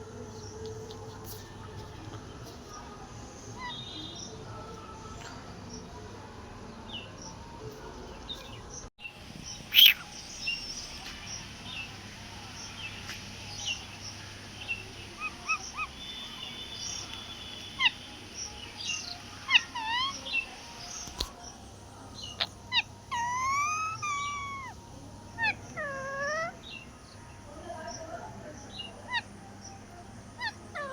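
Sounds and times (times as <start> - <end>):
parrot chirps and whistles: 9.7 - 10.1, 22.4 - 24.8.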